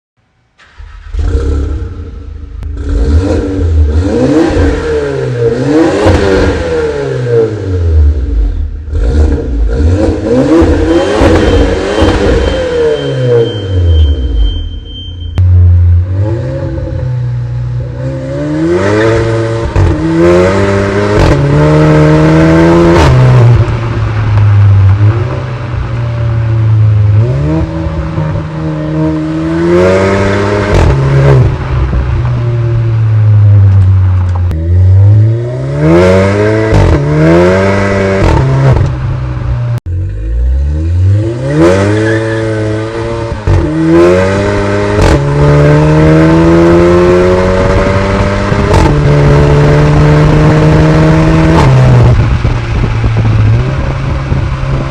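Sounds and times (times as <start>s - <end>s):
car engine revving hard: 0.6s - 14.0s, 17.9s - 25.7s, 26.5s - 33.6s, 34.5s - 54.9s.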